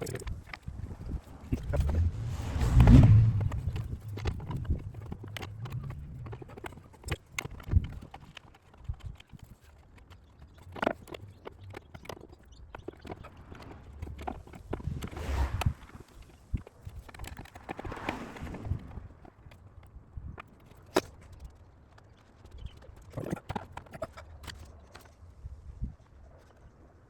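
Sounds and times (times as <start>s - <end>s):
low rumble and knock: 1.0s - 6.6s.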